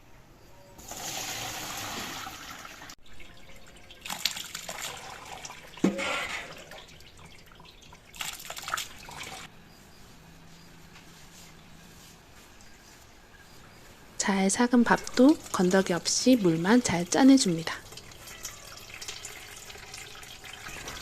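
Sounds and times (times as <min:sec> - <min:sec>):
faint trickling: 0:03.0 - 0:09.5, 0:14.9 - 0:21.0
liquid splashing and dripping: 0:03.0 - 0:09.5, 0:17.6 - 0:21.0.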